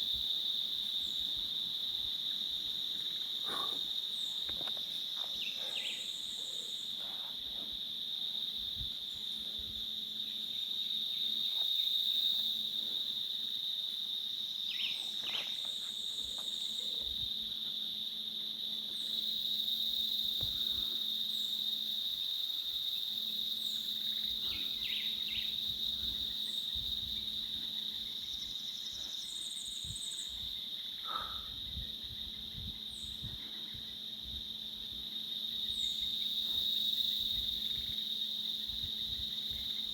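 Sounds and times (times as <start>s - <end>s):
insect chorus trilling: 0.0s - 39.9s
short insect chirps: 14.5s - 17.5s, 18.9s - 39.9s.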